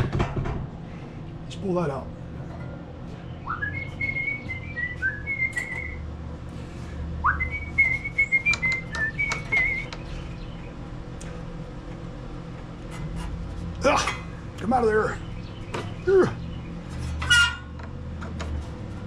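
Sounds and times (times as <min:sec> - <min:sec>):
man whistling a tune: 0:03.5 - 0:06.0, 0:07.2 - 0:09.9
hand tools clicking and tapping: 0:08.4 - 0:10.1.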